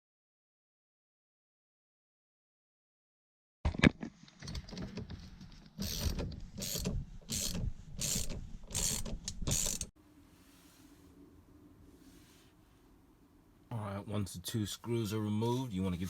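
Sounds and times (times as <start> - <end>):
hand ratchet strokes: 5.8 - 9.9.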